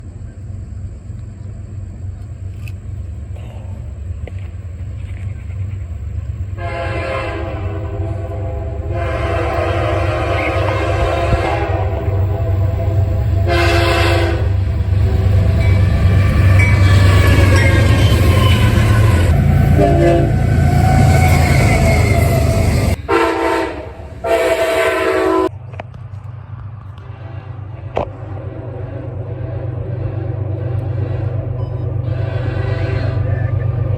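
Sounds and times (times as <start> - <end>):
passing train rumble: 0.0 - 33.9
locomotive air horn blasts: 6.6 - 25.5, 27.1 - 33.7.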